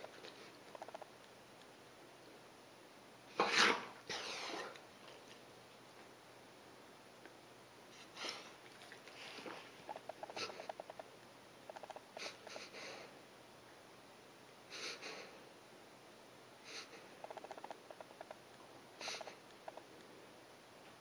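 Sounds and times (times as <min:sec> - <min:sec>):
dog reverse sneezing: 0:03.3 - 0:04.8, 0:08.0 - 0:08.5.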